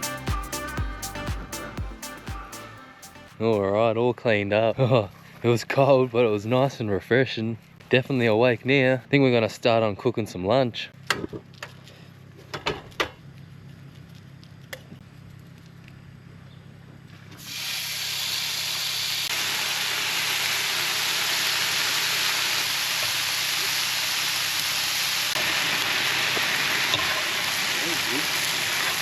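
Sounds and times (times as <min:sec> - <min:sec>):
food sizzling in a pan: 0:17.4 - 0:29.0.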